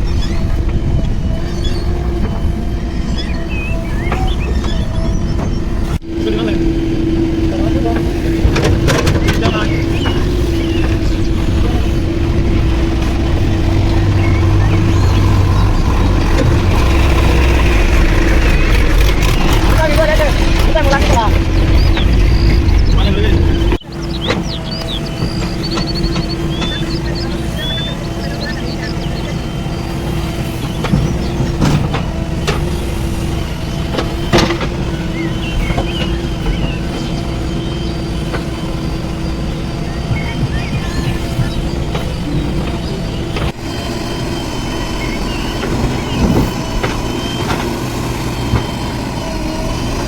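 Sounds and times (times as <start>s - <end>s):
diesel engine droning: 0.0s - 50.0s.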